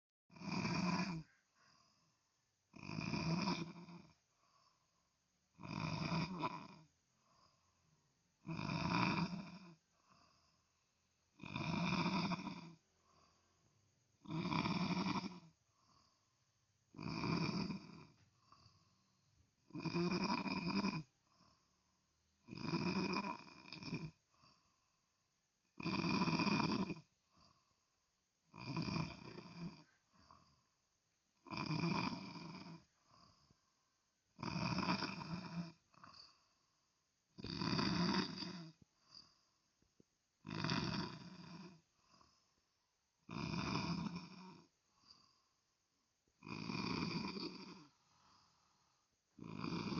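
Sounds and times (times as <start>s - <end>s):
person snoring heavily: 0.3s - 2.1s, 2.7s - 4.8s, 5.5s - 7.6s, 8.4s - 10.7s, 11.3s - 13.4s, 14.2s - 16.2s, 16.9s - 21.6s, 22.4s - 24.7s, 25.8s - 27.7s, 28.5s - 30.6s, 31.4s - 33.5s, 34.4s - 36.5s, 37.4s - 39.4s, 40.4s - 42.4s, 43.2s - 45.4s, 46.4s - 48.8s, 49.4s - 49.9s
faint breath: 1.0s - 2.4s, 4.2s - 5.4s, 7.0s - 8.2s, 9.8s - 11.1s, 12.8s - 14.1s, 15.5s - 16.6s, 18.1s - 19.5s, 21.1s - 22.1s, 24.2s - 25.3s, 27.2s - 28.2s, 29.8s - 30.9s, 32.8s - 34.1s, 38.8s - 40.1s, 44.8s - 46.0s, 47.8s - 49.3s.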